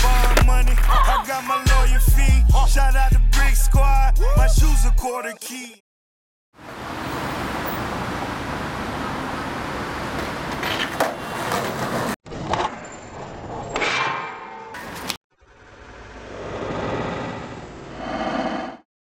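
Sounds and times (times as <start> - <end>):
skateboard wheels rolling on pavement: 0.0 - 1.1, 6.6 - 12.2
skateboard clacking: 10.0 - 12.1.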